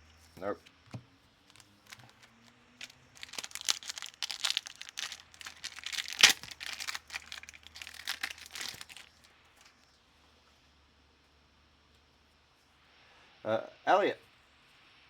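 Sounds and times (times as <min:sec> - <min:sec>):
plastic wrapper crinkling and tearing: 0:01.5 - 0:09.8.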